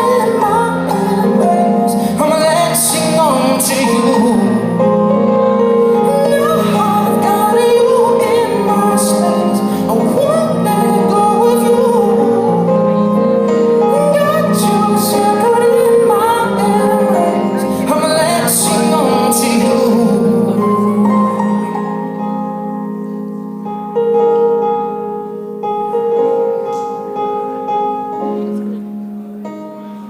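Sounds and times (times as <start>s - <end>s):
high voice singing: 0.0s - 13.1s, 13.8s - 22.2s
steady held chords: 0.0s - 30.0s.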